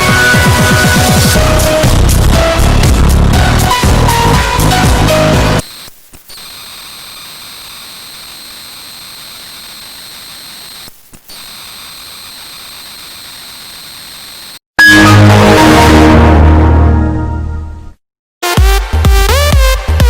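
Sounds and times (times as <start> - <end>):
loud electronic music: 0.0 - 5.6, 14.8 - 16.9, 18.4 - 20.0.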